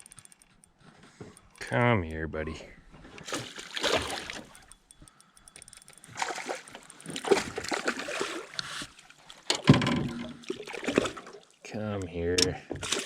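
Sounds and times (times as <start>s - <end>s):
fish splashing in water: 3.2s - 4.7s, 6.1s - 9.5s, 10.3s - 11.6s.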